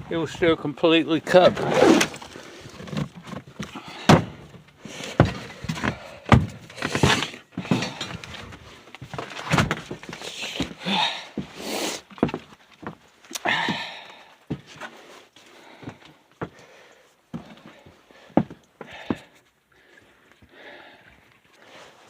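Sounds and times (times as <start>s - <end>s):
thumps and knocks: 2.8s - 8.4s.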